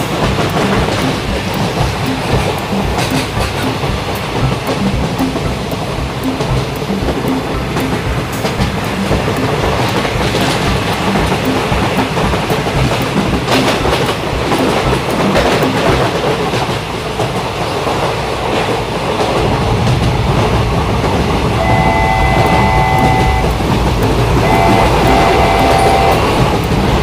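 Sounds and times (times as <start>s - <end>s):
train clickety-clack on rails: 0.0s - 27.0s
multi-tone train horn: 21.6s - 23.6s, 24.4s - 26.7s.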